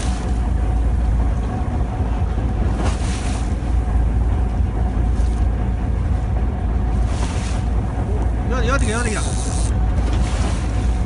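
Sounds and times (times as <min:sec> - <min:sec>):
boat engine running: 0:00.0 - 0:11.0
sea noise around hull: 0:00.0 - 0:11.0.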